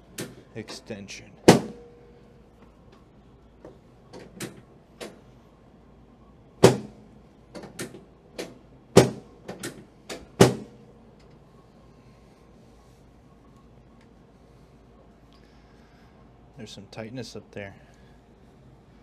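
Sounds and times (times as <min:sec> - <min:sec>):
chiropractic adjustment knocks: 0:01.5 - 0:01.9, 0:06.6 - 0:07.0, 0:07.6 - 0:10.8.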